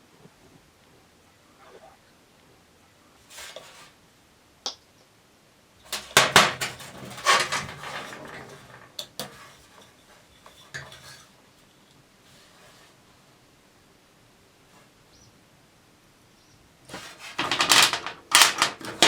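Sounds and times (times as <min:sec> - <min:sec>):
hard objects clinking and clattering: 0:05.9 - 0:11.3, 0:16.9 - 0:19.0.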